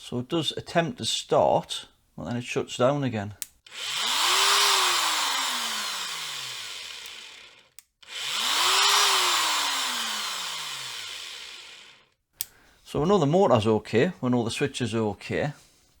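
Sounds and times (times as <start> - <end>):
angle grinder motor whining: 3.7 - 12.2.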